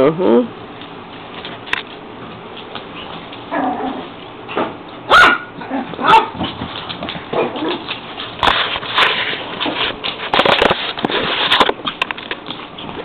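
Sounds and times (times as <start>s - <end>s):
puppies barking and yipping: 2.8s - 9.0s.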